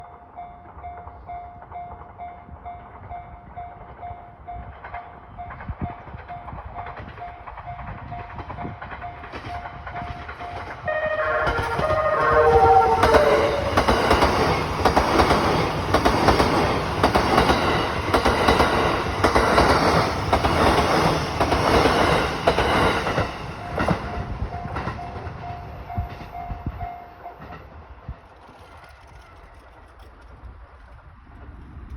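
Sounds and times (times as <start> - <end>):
crossing warning bells dinging: 0.0 - 27.9
falling tone: 10.9 - 14.6
train wheels clattering over rail joints: 13.6 - 26.4.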